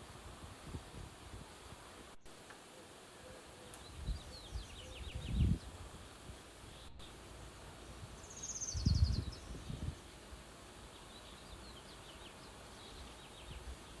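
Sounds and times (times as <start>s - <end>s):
bird high chirps: 3.2s - 5.7s, 8.2s - 10.0s.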